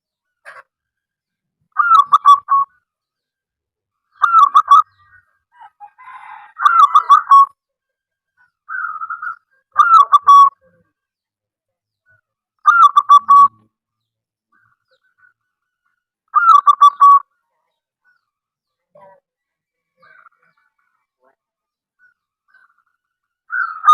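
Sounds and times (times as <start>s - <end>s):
dove cooing: 1.8s - 2.7s.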